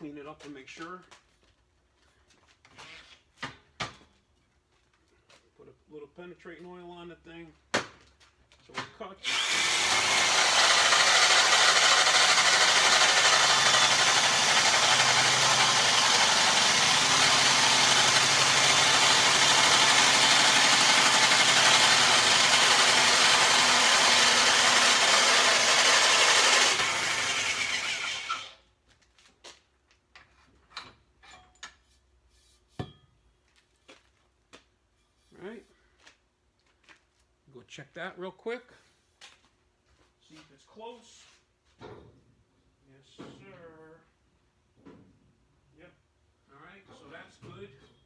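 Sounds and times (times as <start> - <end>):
electric drill cutting metal tube: 9.3 - 28.6.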